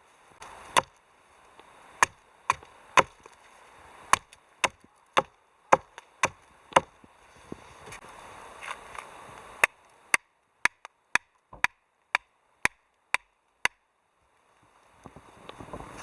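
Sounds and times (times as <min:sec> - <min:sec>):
blade chopping wood: 0:00.4 - 0:01.0, 0:02.0 - 0:03.4, 0:04.1 - 0:07.0, 0:09.6 - 0:13.8.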